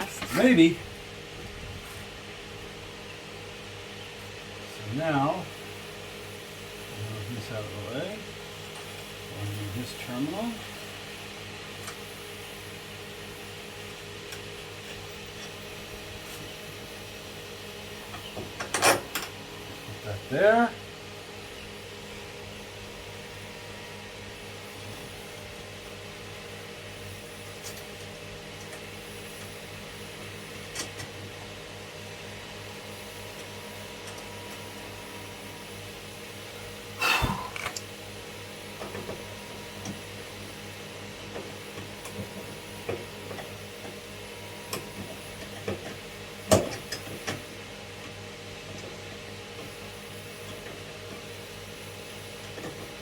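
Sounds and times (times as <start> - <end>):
steady low hum: 32.5 - 39.6.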